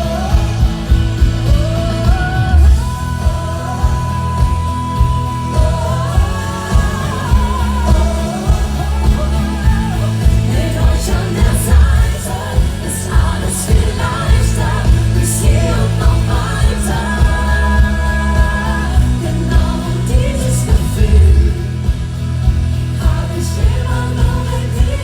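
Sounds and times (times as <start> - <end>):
live band with heavy beat: 0.0 - 25.0
person singing: 0.0 - 25.0.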